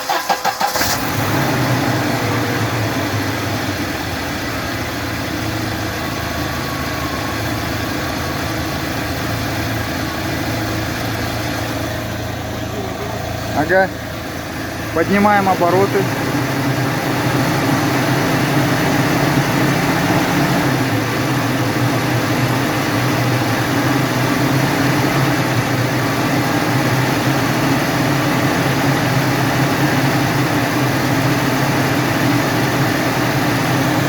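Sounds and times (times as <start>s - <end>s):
car engine running at raised revs: 0.0s - 34.0s.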